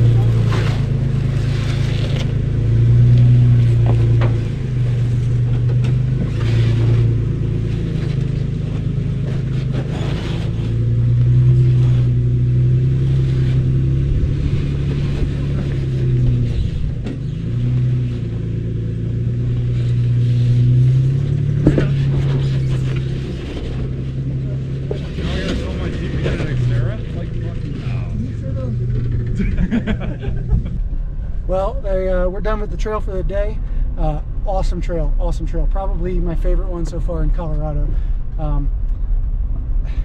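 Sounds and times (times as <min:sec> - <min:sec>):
vehicle engine at low revs: 0:00.0 - 0:40.0
vehicle knocking on rocks: 0:21.5 - 0:22.3.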